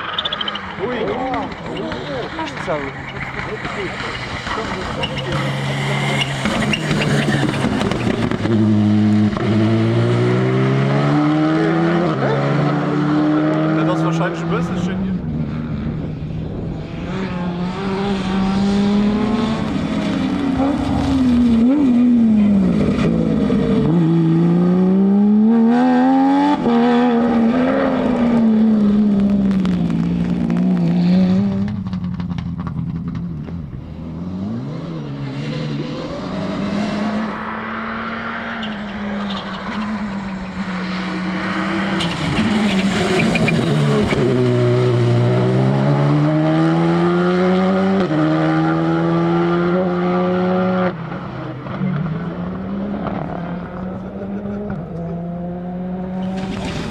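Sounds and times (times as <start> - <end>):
rally car engines revving: 0.0 - 56.9.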